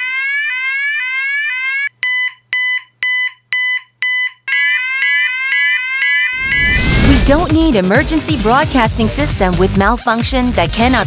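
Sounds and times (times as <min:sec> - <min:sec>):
fire alarm rising sweeps: 0:06.4 - 0:11.0.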